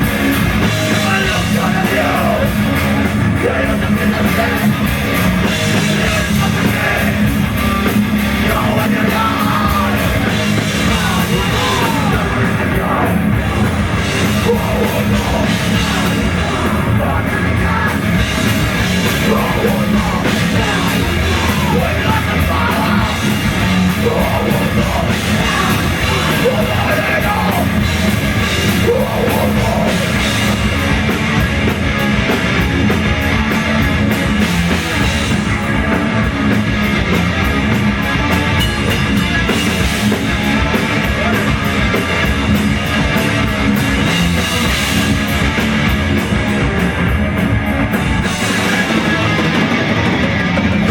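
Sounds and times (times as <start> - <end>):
live rock band playing: 0.0 - 50.9
singer shouting vocals: 0.8 - 4.8, 5.8 - 7.4, 8.3 - 30.4.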